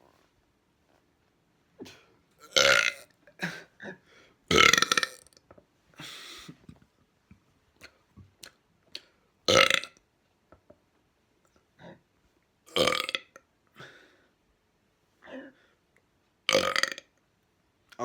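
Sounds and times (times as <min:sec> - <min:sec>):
person burping loudly: 0:02.4 - 0:05.4, 0:09.5 - 0:10.0, 0:12.7 - 0:13.4, 0:16.5 - 0:17.1.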